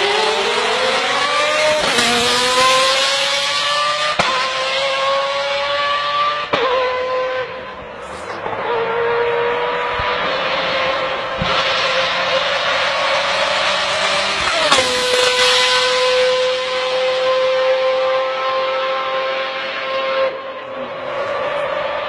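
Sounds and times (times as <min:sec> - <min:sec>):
car engine accelerating: 0:00.0 - 0:22.0.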